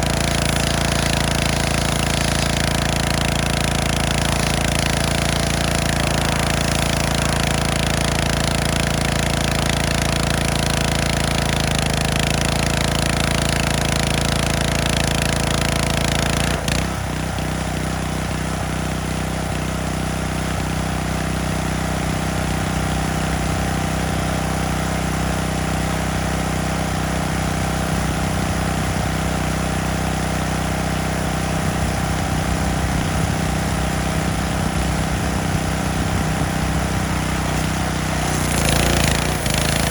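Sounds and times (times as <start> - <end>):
loud water spray hiss: 0.0 - 8.2, 31.5 - 39.9
pressure washer engine running: 0.0 - 39.9.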